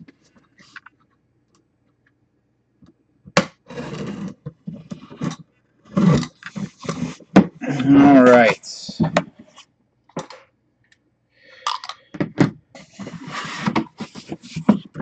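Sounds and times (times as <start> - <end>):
cardboard box rustling and scraping: 3.7 - 7.6, 12.8 - 15.0.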